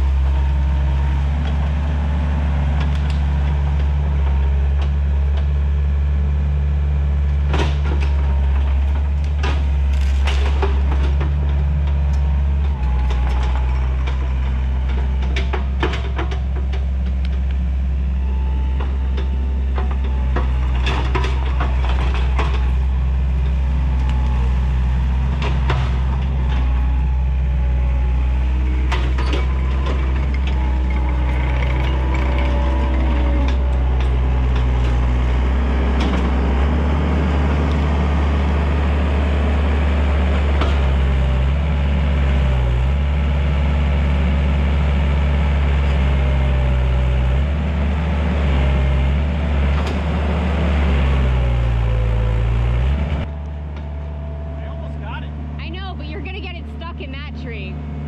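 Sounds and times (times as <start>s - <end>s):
diesel engine running under load: 0.0s - 58.0s
wood cracking and snapping: 7.5s - 11.4s.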